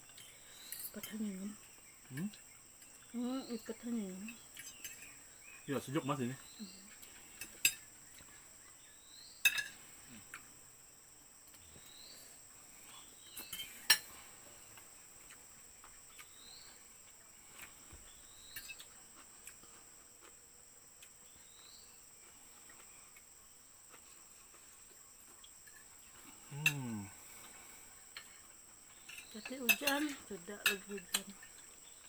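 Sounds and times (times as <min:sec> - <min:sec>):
high insect drone: 0:00.0 - 0:32.0
cutlery clinking against plates: 0:07.4 - 0:07.9, 0:09.4 - 0:09.8, 0:13.4 - 0:14.2, 0:29.0 - 0:31.7.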